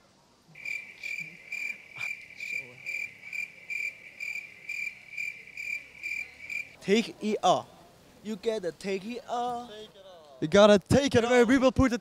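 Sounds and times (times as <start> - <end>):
cricket chirping: 0.6 - 6.8.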